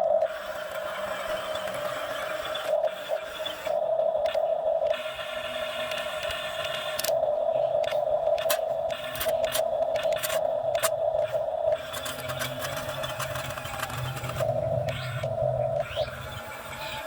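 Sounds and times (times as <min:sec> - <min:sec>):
excavator engine and hydraulics: 0:04.4 - 0:17.0.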